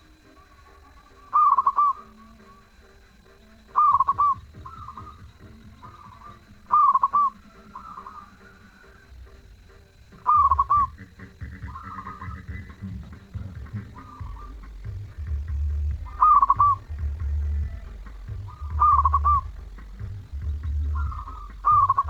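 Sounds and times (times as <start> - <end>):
dove cooing: 0.0 - 22.0.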